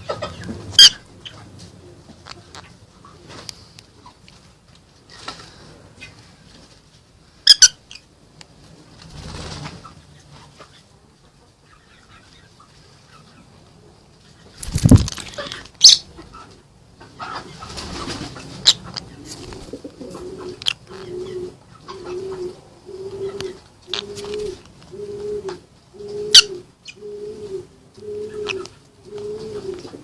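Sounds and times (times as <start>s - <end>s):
wings fluttering: 8.9s - 10.4s, 14.6s - 15.8s, 17.3s - 20.5s.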